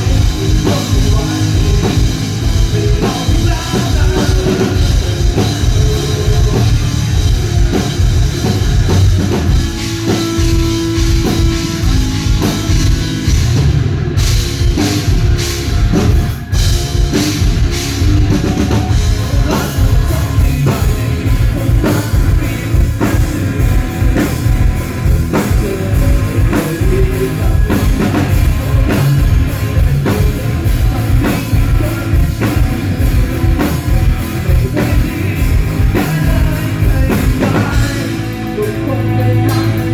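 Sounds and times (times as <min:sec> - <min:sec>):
person singing: 0:00.0 - 0:10.2, 0:18.3 - 0:39.9
loud rock music: 0:00.0 - 0:39.9.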